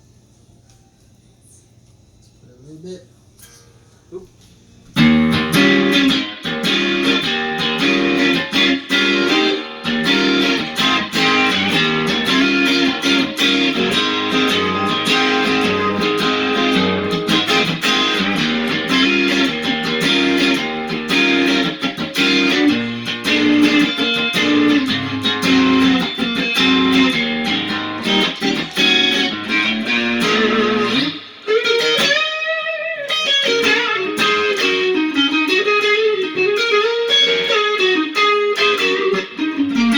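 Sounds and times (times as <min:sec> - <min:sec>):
overdriven electric guitar riffing: 0:04.9 - 0:39.9.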